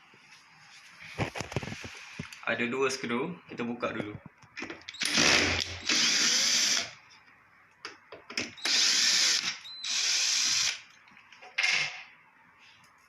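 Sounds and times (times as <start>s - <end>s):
power drill spinning: 4.9s - 7.0s, 8.6s - 10.8s.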